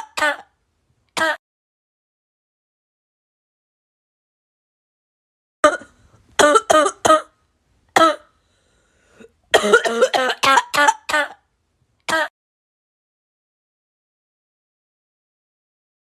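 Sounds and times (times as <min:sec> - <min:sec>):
person coughing: 0:01.2 - 0:01.4, 0:05.6 - 0:07.3, 0:08.0 - 0:08.3, 0:09.2 - 0:11.4, 0:12.1 - 0:12.3.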